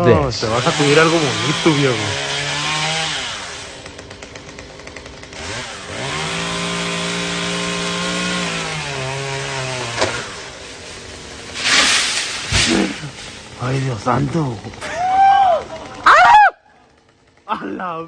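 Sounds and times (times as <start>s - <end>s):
chainsaw engine revving: 0.0s - 18.0s
loud burst of noise: 10.5s - 16.2s.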